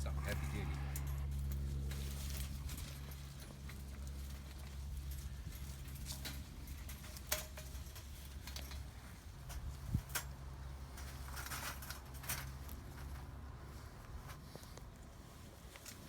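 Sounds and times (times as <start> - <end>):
low steady hum: 0.0 - 16.0
metallic clicks and rattles of trap: 5.4 - 10.4.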